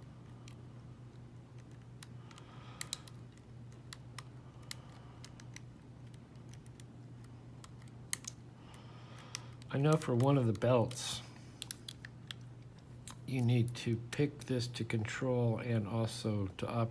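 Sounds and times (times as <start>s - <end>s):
low steady hum: 0.0s - 16.9s
lock pick clicking pins: 1.5s - 8.4s.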